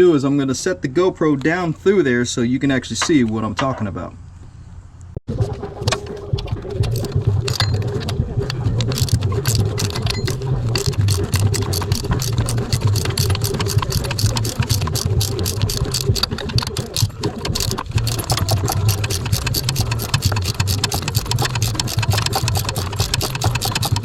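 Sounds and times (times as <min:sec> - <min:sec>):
machine humming: 0:05.3 - 0:24.0
rapid even clicking: 0:05.4 - 0:24.0.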